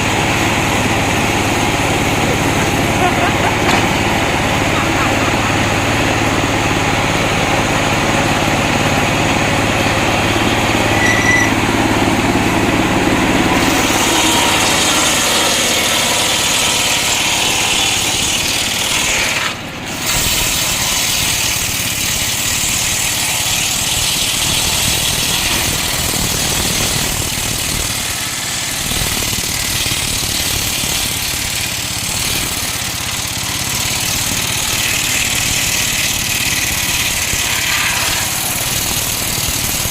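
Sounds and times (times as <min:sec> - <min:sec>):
circular saw cutting wood: 0:00.0 - 0:39.9.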